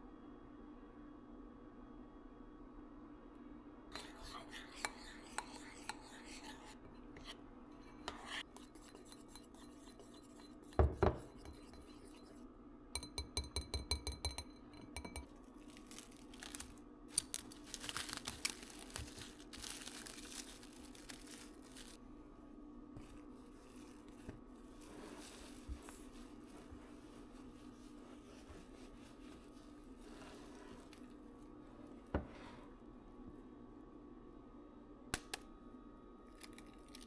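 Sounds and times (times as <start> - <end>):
glass clinking: 13.0 - 15.3
rustling and scraping: 15.5 - 22.0, 23.0 - 31.3.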